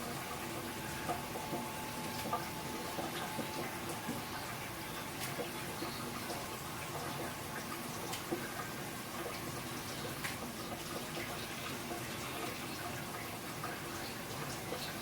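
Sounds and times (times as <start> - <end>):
steady watery noise: 0.0 - 15.0.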